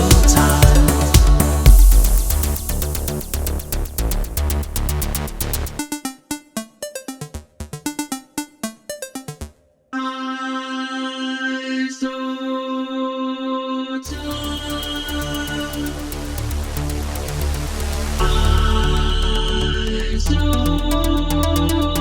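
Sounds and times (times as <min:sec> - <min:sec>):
electronic beat with deep bass: 0:00.0 - 0:09.6, 0:14.1 - 0:22.0.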